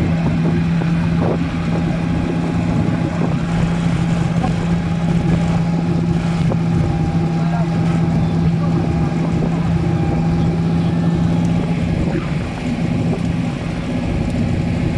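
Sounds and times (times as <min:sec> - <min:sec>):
vehicle engine running loud: 0:00.0 - 0:14.9.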